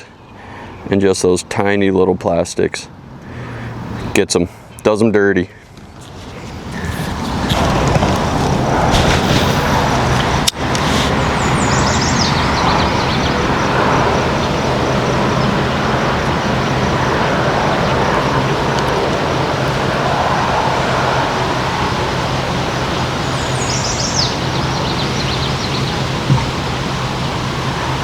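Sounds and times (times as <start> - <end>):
loud rushing noise: 6.0 - 28.0
low hum: 6.0 - 28.0.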